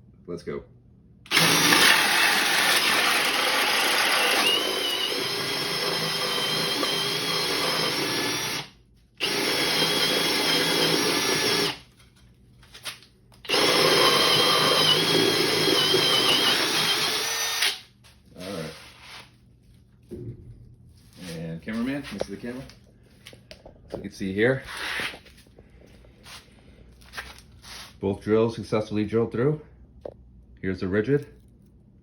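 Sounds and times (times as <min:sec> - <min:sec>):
drill motor whine: 0:01.3 - 0:11.8, 0:13.4 - 0:17.8.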